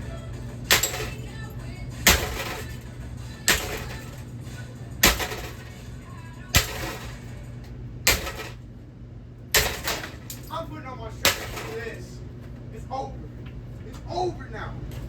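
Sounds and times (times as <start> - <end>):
ceiling fan being smashed: 0.0 - 8.7, 9.5 - 12.2.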